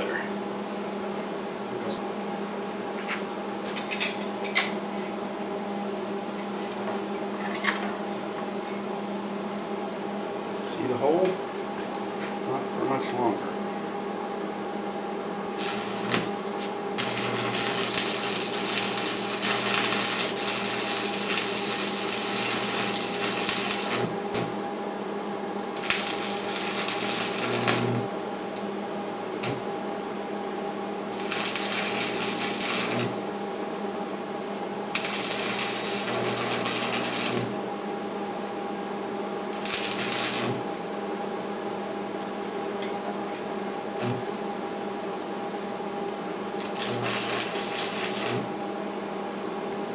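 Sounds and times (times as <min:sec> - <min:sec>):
welding arc crackling: 0:15.6 - 0:16.4, 0:17.0 - 0:24.7, 0:25.8 - 0:28.1, 0:29.4 - 0:29.6, 0:31.1 - 0:33.4, 0:34.9 - 0:37.7, 0:39.5 - 0:40.9, 0:44.0 - 0:44.2, 0:46.6 - 0:48.5
welder hum: 0:15.6 - 0:24.8, 0:25.7 - 0:30.2, 0:31.1 - 0:34.1, 0:34.9 - 0:38.9, 0:39.5 - 0:41.3, 0:44.0 - 0:44.7, 0:46.1 - 0:49.0.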